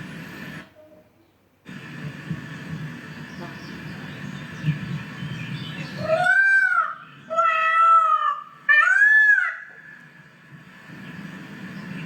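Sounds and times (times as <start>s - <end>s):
drawn-out animal calls: 5.8s - 10.0s.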